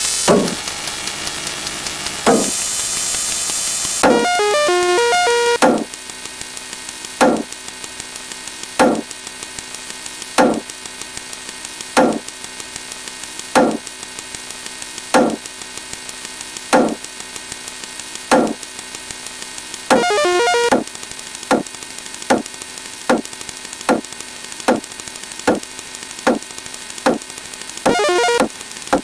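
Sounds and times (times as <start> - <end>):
synthetic knocks with downward sweep: 0.3 - 0.6, 2.3 - 2.6, 4.0 - 4.4, 5.6 - 5.9, 7.2 - 7.5, 8.8 - 9.1, 10.4 - 10.6, 12.0 - 12.2, 13.6 - 13.8, 15.2 - 15.4, 16.8 - 17.0, 18.3 - 18.6, 19.9 - 20.8, 27.9 - 29.0
fast faint ticking: 23.1 - 23.3.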